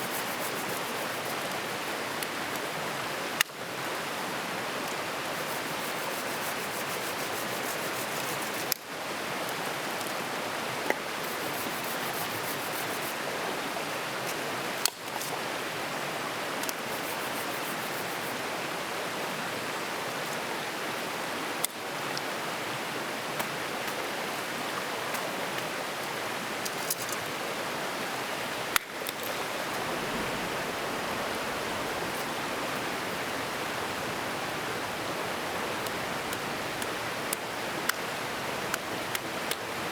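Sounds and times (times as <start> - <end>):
mountain stream rushing: 0.0 - 39.9.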